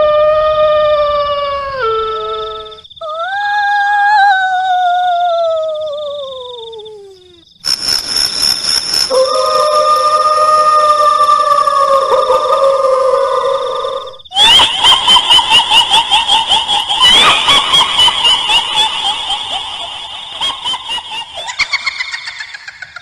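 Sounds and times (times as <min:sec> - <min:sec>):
eerie ghostly wail: 0:00.0 - 0:05.6, 0:09.1 - 0:23.0
high-pitched cackling laugh: 0:14.3 - 0:23.0.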